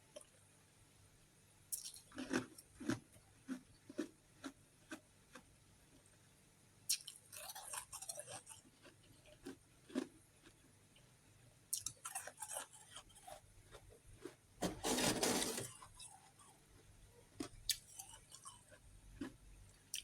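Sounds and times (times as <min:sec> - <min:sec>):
chewing and crunching ice: 0:01.7 - 0:06.1, 0:06.9 - 0:11.1, 0:11.7 - 0:20.0.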